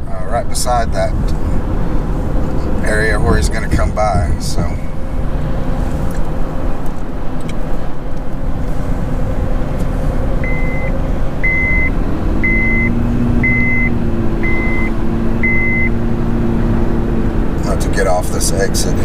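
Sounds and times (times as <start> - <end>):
car road and engine noise: 0.0 - 19.0
high electronic beep: 10.4 - 16.0.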